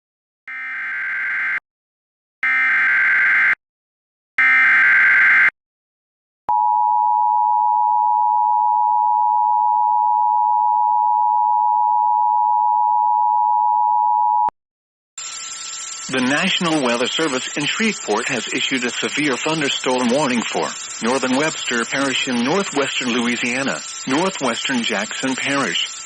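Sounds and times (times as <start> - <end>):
digital data tone bursts: 15.2 - 26.0
two-tone attention signal: 15.2 - 26.0.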